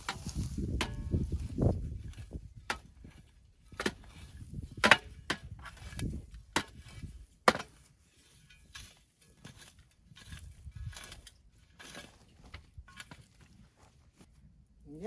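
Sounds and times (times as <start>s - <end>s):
digging tool striking soil: 0.0s - 7.9s.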